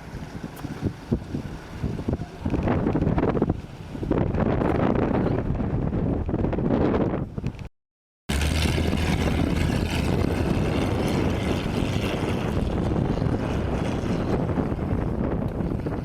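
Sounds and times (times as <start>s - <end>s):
wind buffeting microphone: 0.0s - 7.7s, 8.3s - 16.0s
off-road vehicle engine running: 8.3s - 16.0s.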